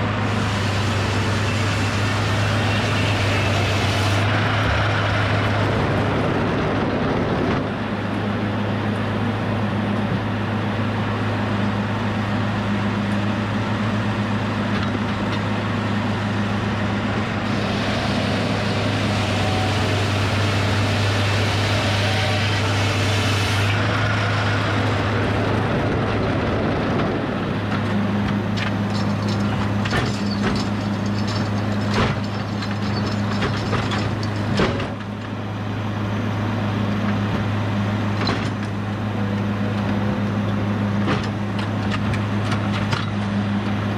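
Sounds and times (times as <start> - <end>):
sawmill mechanical hum: 0.0 - 43.9
harsh hiss: 0.2 - 4.2
sharp knocks and clanks: 27.7 - 35.1.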